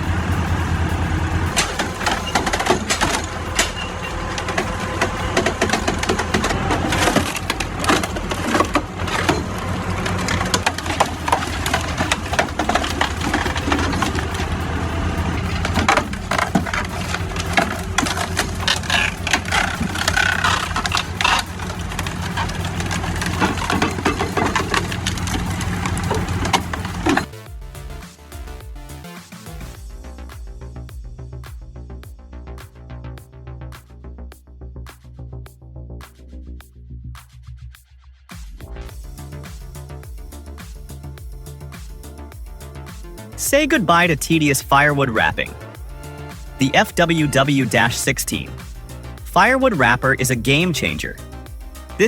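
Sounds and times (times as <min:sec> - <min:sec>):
log splitter low hum: 0:00.0 - 0:27.3
wood cracking and splintering: 0:04.4 - 0:27.3.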